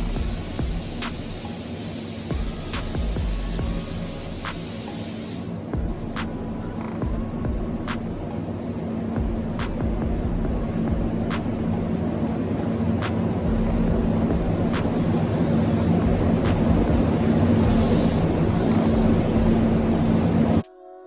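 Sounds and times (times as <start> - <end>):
mechanical drone with low hum: 0.0 - 20.6.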